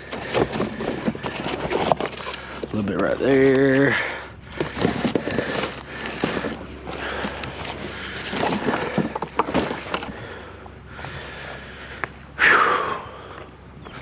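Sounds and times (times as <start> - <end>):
scrap metal rustling and clanking: 0.0 - 10.3.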